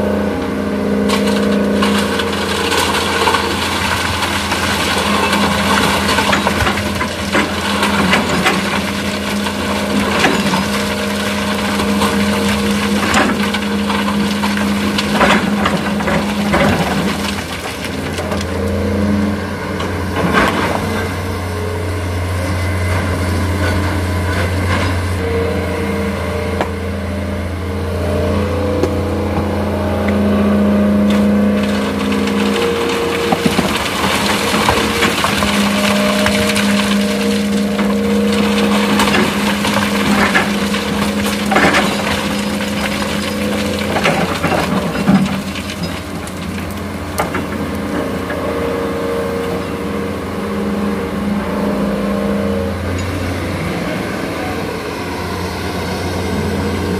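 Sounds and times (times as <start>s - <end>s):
excavator diesel engine under load: 0.0s - 56.9s
sand and stones dropping into truck: 31.1s - 47.6s.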